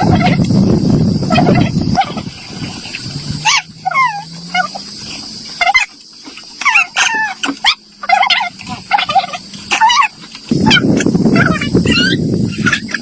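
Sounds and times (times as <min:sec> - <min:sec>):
faint low hum: 0:00.0 - 0:13.0
squeaky animal calls: 0:01.3 - 0:02.3, 0:03.4 - 0:04.9, 0:05.5 - 0:06.0, 0:06.6 - 0:13.0.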